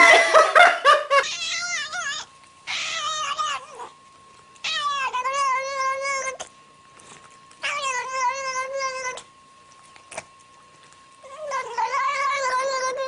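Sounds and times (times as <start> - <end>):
cat meowing yowls: 1.2 - 3.9, 4.6 - 6.4.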